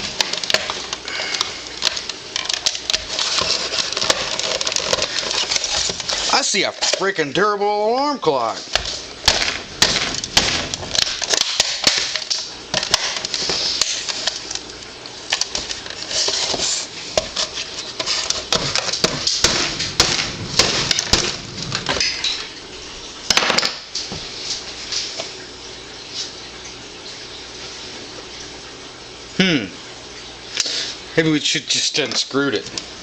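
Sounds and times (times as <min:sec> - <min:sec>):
tool prying alarm clock casing: 0:08.7 - 0:14.4.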